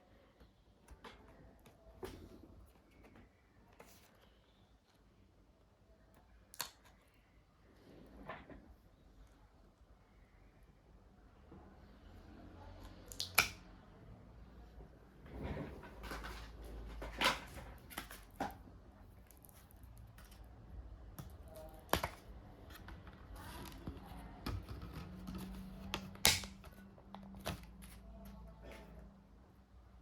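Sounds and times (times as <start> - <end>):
clicks of laptop parts handled: 24.4 - 27.9.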